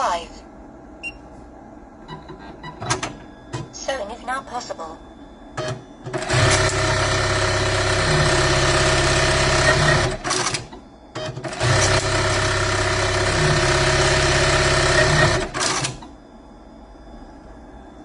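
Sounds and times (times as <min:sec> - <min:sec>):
sewing machine loud burst: 0:06.1 - 0:10.7, 0:11.4 - 0:16.0
sewing machine stitching: 0:06.1 - 0:16.0.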